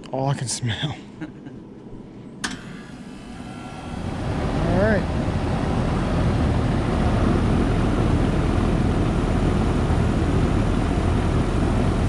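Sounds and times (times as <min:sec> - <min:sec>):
heat pump fan running: 0:00.1 - 0:12.0.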